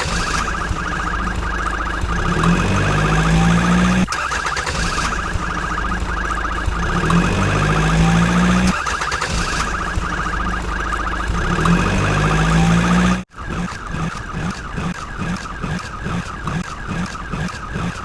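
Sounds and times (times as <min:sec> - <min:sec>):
electronic alarm pulsing chirps: 0:00.0 - 0:18.0.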